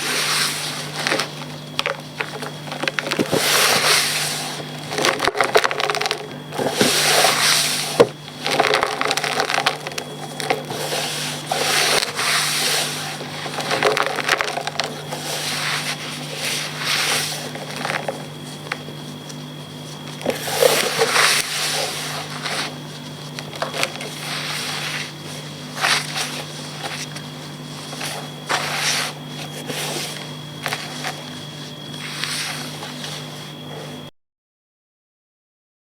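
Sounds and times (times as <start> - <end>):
chalk crunching: 0.0 - 34.0
steady low hum: 0.0 - 34.1.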